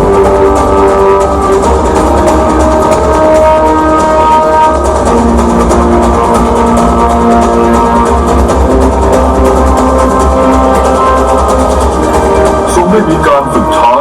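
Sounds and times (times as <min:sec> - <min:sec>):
dramatic show music: 0:00.0 - 0:14.0.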